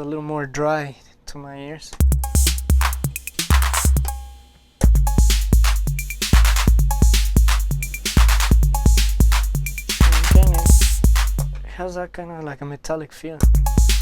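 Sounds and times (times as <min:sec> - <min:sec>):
drum machine beat: 0:02.0 - 0:11.9, 0:13.4 - 0:14.0.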